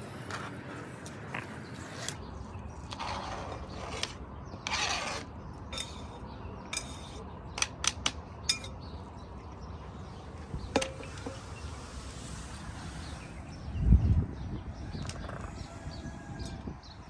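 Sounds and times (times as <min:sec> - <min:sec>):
low outdoor background: 0:00.0 - 0:17.0
cooking utensils scraping: 0:01.9 - 0:08.9
utensils clicking and knocking: 0:06.8 - 0:08.8.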